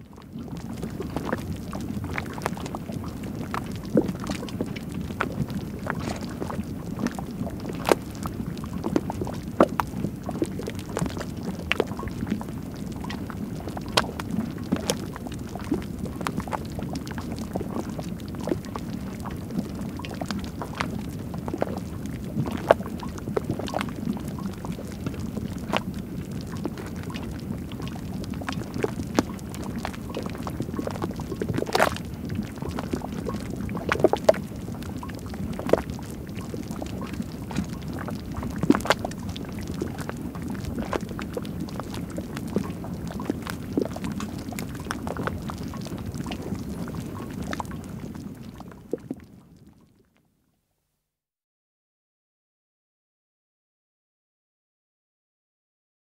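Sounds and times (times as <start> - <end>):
mud pool bubbling and popping: 0.0 - 50.2.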